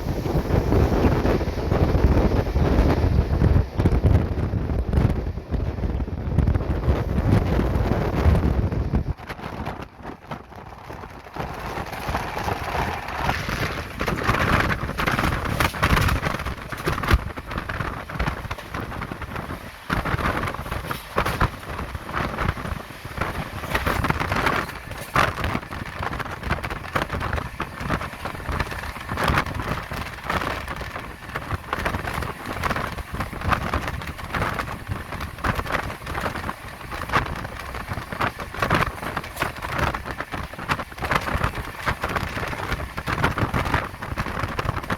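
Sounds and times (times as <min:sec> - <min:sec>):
train wind rush: 0:00.0 - 0:44.9
wheel-on-rail noise: 0:00.0 - 0:44.9
knocks and rattles: 0:09.2 - 0:44.9.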